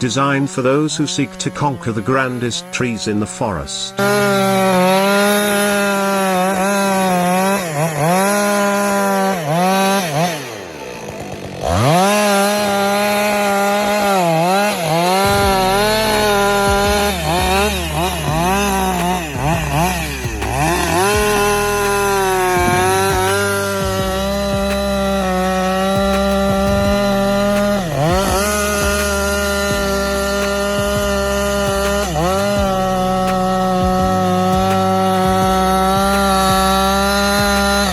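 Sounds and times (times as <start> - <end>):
chainsaw cutting wood: 0.0 - 37.9
low steady rumble: 15.2 - 34.4.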